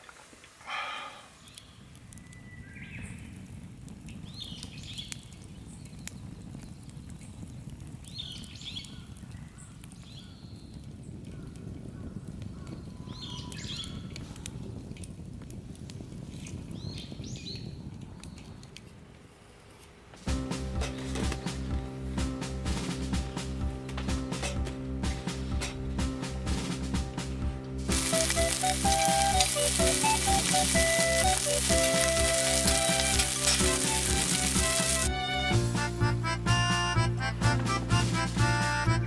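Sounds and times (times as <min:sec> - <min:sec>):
low wind rumble on microphone: 0:01.5 - 0:19.8
music: 0:20.3 - 0:39.0
bird chirping: 0:27.9 - 0:35.1.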